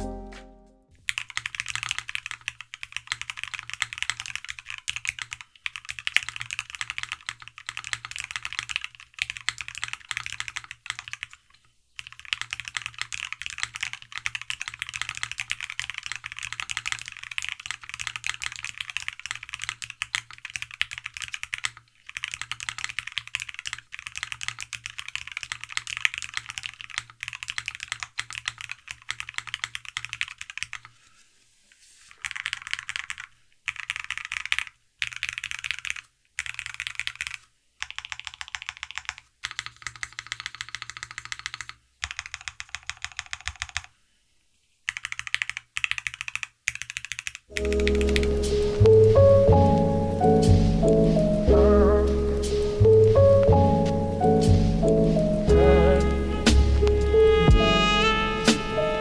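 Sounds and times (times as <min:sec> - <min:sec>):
fast typing on mechanical keyboard: 0:01.0 - 0:30.9, 0:32.1 - 0:44.0, 0:44.8 - 0:48.7.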